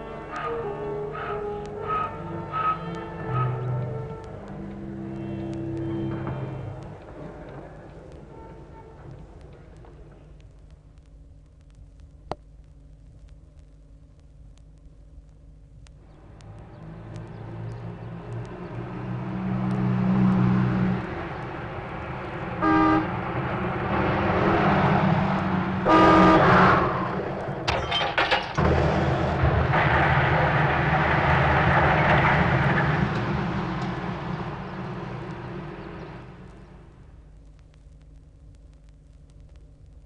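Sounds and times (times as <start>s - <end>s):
horn toot: 0.0s - 7.0s, 22.5s - 23.6s, 25.8s - 27.2s
long horn blast: 0.0s - 9.4s, 16.3s - 27.5s
sharp clicks: 9.4s - 18.8s
vehicle engine running: 16.0s - 37.3s.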